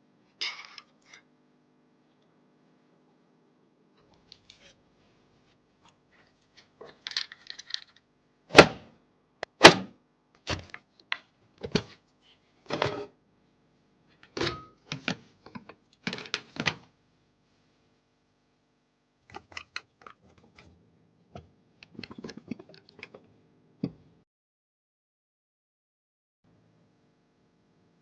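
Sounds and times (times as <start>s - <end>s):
computer parts clicking and knocking: 14.3s - 16.8s.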